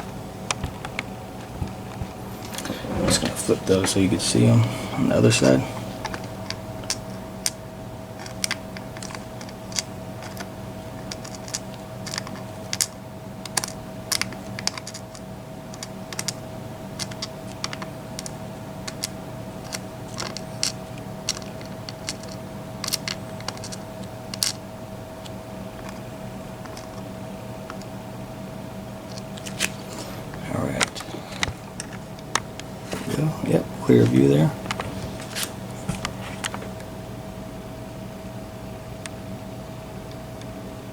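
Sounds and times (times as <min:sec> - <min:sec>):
steady hum: 0:00.0 - 0:40.9
small metal parts clicking: 0:08.2 - 0:16.4, 0:17.0 - 0:24.6.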